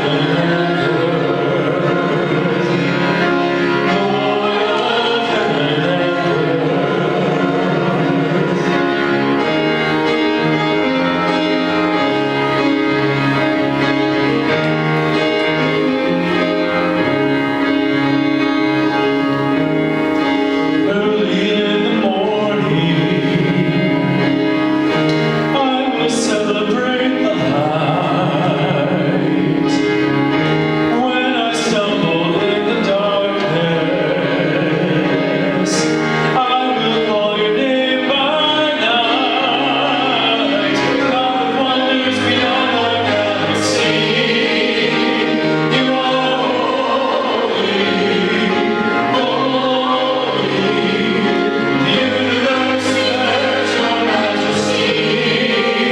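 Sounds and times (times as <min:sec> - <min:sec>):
people singing worship song: 0:00.0 - 0:09.8, 0:30.9 - 0:55.9
keyboard accompaniment: 0:00.0 - 0:55.9.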